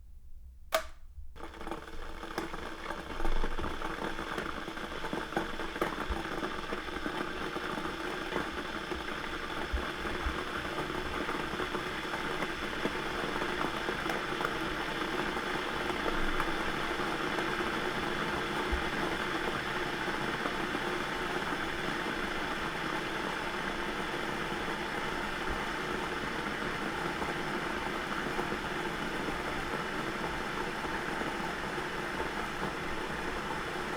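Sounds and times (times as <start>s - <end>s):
kettle switch click: 0.7s - 1.1s
kettle water heating rushing: 0.7s - 33.9s.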